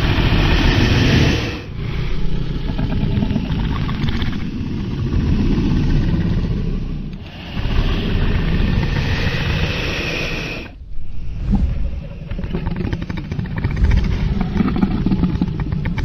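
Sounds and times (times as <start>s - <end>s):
dragon roar: 5.0s - 16.0s.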